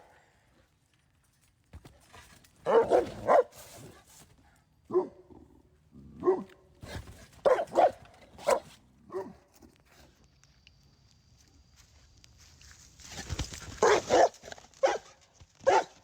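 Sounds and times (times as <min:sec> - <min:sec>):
dog barking deeply: 0:02.6 - 0:03.6, 0:04.9 - 0:05.3, 0:06.1 - 0:06.5, 0:07.4 - 0:09.4, 0:13.8 - 0:16.0.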